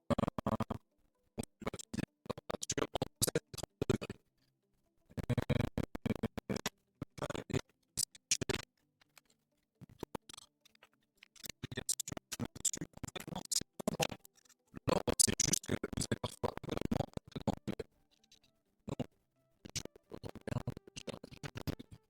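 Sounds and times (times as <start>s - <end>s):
objects scratching and clicking: 5.2s - 22.0s.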